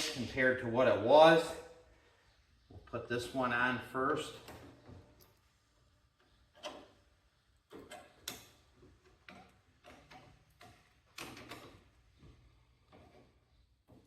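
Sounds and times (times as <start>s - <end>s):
light clicks and knocks of parts: 4.3s - 14.0s.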